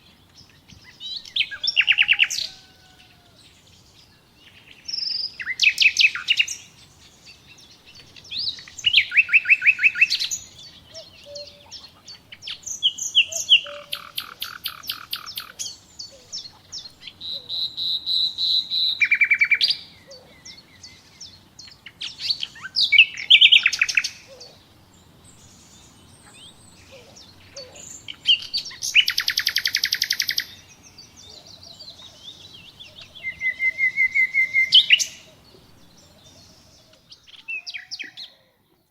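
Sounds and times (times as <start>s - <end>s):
songbird chirps and trills: 0.0s - 38.9s.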